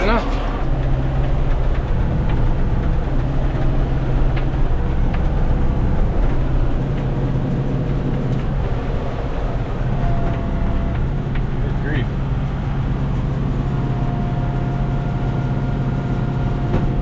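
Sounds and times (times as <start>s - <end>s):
tractor diesel engine running: 0.0s - 17.0s.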